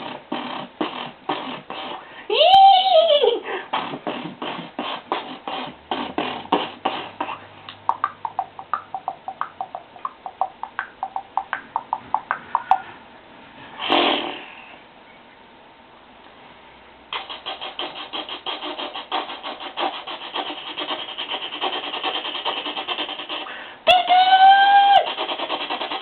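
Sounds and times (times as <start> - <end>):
breathy chuffing: 0.0 - 2.3, 3.4 - 7.8, 17.1 - 23.9
tongue clicks: 4.1 - 12.9
loud noisy burst: 13.8 - 14.6.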